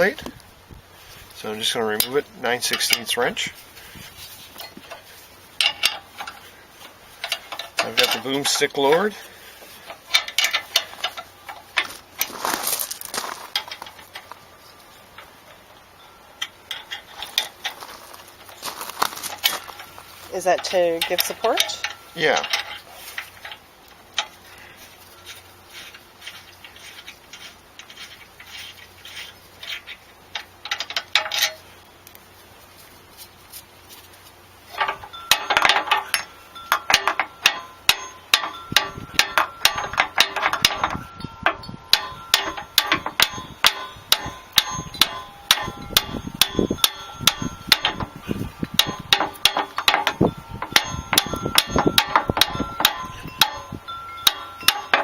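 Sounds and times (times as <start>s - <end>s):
metal-on-metal taps ringing: 7.2s - 9.2s, 20.6s - 23.6s, 34.7s - 55.0s.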